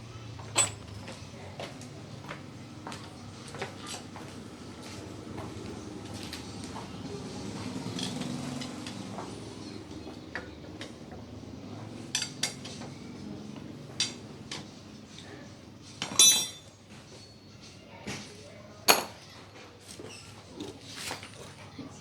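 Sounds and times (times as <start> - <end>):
metal tools clinking on workbench: 0.5 - 1.1, 16.0 - 17.4, 18.9 - 19.3.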